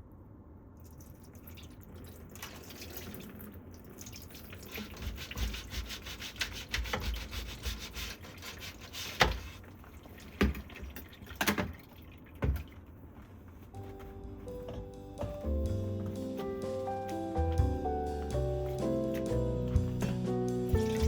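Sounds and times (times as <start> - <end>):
quick scrubbing strokes: 4.8 - 9.7.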